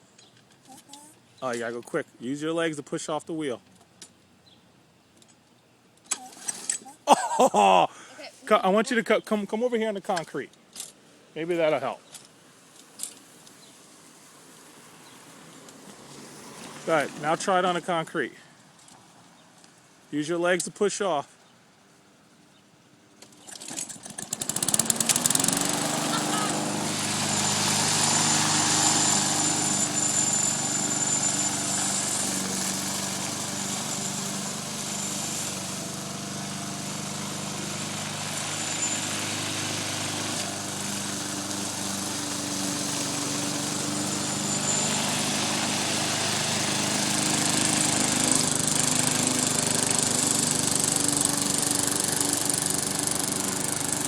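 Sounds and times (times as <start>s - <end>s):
lawn mower engine running: 23.5s - 54.0s.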